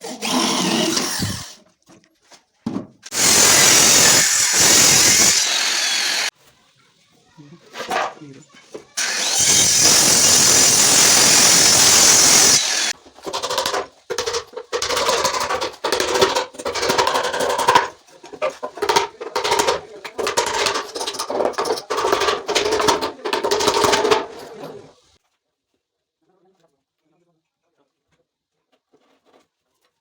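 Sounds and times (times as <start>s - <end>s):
power tool rasping wood: 0.0s - 1.6s, 3.1s - 6.3s, 9.0s - 24.9s.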